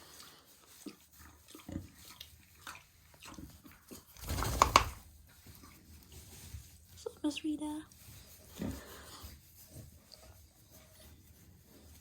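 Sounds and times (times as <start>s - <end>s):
pig making wet mouth noises: 0.0s - 6.2s, 7.9s - 11.1s.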